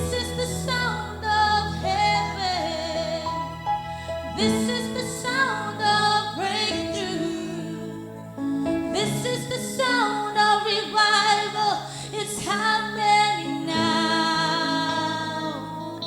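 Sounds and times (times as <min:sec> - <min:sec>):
person singing slow melody: 0:00.0 - 0:16.0
sustained chords: 0:00.0 - 0:16.0.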